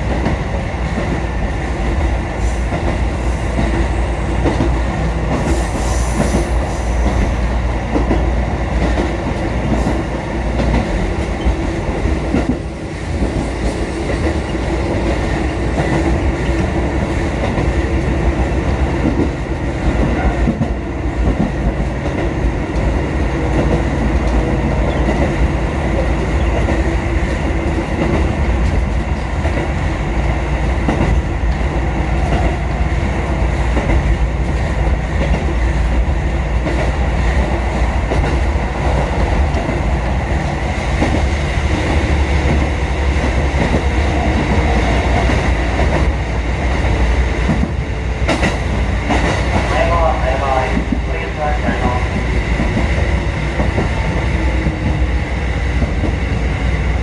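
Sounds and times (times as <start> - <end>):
train wheels rumbling on rail: 0.0 - 57.0
faint train running tones: 30.3 - 57.0.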